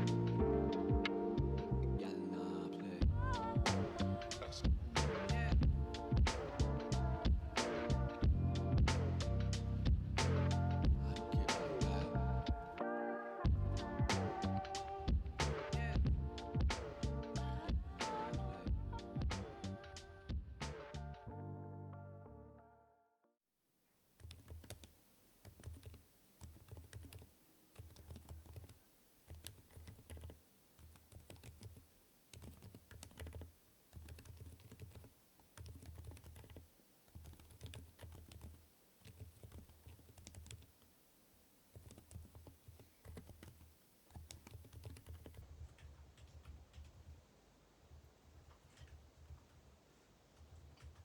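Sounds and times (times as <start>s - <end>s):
quiet keyboard typing: 24.2s - 40.9s, 41.7s - 47.3s, 47.9s - 51.0s.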